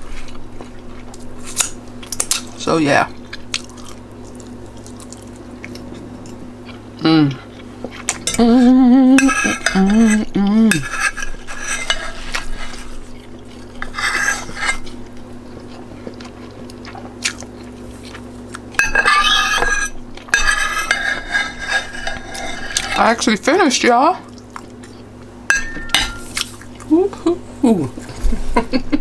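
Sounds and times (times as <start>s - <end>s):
wavering voice humming: 8.3s - 10.8s
metal utensil scraping a plate: 9.2s - 15.0s, 18.8s - 23.3s, 25.5s - 26.4s.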